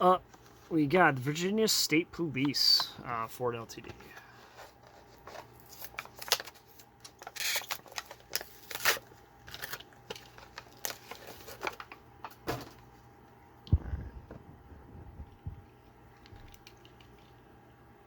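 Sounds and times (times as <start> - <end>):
plastic packaging clicks and crinkles: 4.8 - 12.8.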